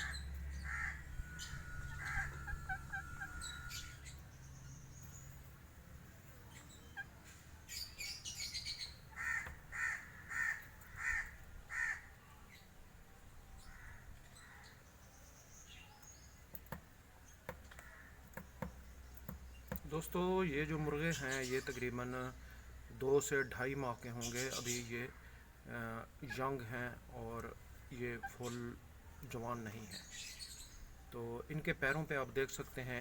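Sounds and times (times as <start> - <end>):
short bird calls: 0.0 - 5.2
birds chirping: 0.0 - 33.0.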